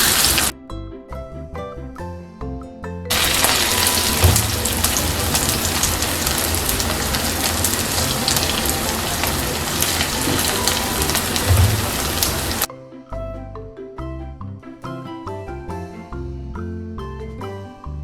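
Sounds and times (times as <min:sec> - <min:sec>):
hot oil sizzling and crackling: 0:00.0 - 0:00.5, 0:03.1 - 0:12.7.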